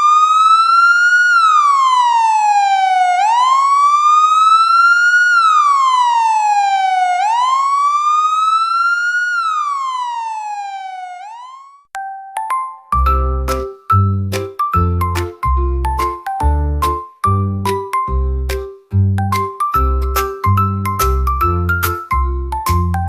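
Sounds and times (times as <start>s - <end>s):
emergency vehicle wail siren: 0.0s - 11.9s.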